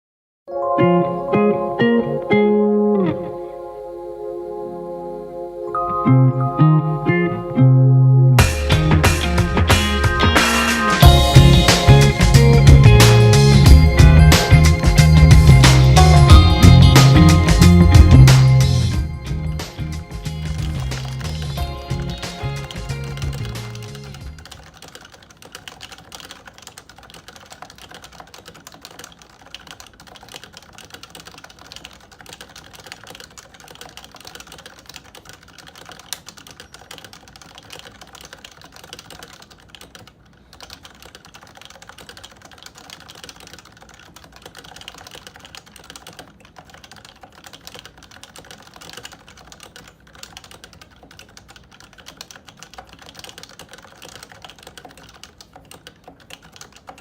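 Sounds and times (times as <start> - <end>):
fast keyboard typing: 8.4 - 57.0.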